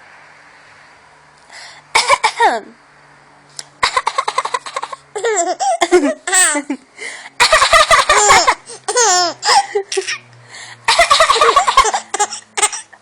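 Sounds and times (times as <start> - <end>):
baby laughing: 3.8 - 6.8, 7.4 - 10.3, 10.9 - 13.0.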